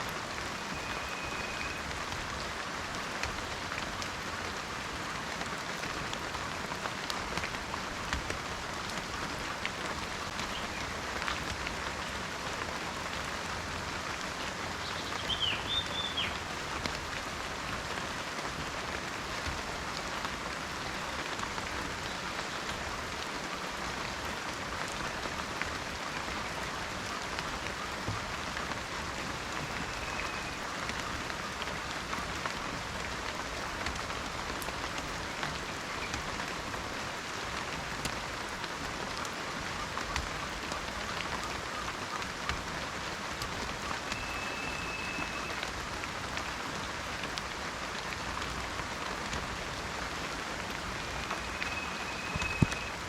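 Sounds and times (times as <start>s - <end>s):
rain falling in a forest: 0.0s - 53.0s
bird call: 0.5s - 1.9s, 14.9s - 16.4s, 29.4s - 30.6s, 43.8s - 45.6s, 51.0s - 53.0s.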